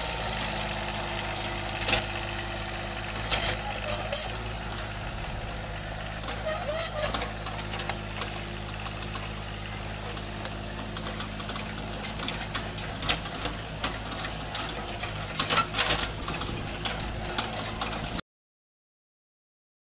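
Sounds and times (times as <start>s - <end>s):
diesel engine running: 0.0s - 18.2s
metallic clicks and clanks: 3.1s - 4.4s, 6.2s - 18.2s.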